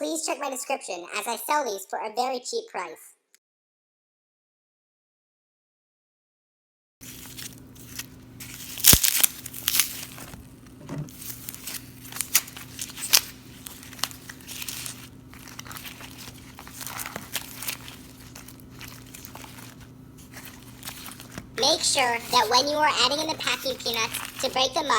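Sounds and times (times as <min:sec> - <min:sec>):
faint electrical hum: 0:07.0 - 0:24.9
foam peanuts crunching and crackling: 0:07.0 - 0:24.9.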